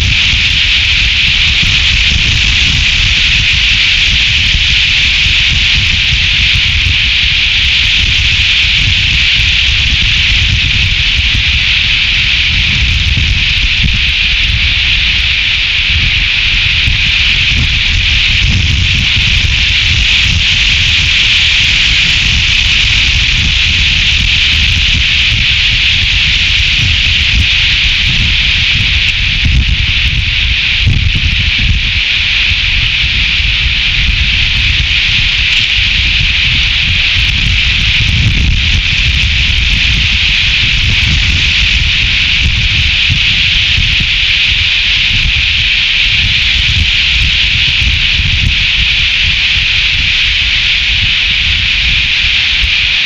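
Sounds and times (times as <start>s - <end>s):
steady hiss: 0.0s - 53.0s
strong wind blowing: 0.0s - 53.0s
wind through trees: 0.0s - 53.0s.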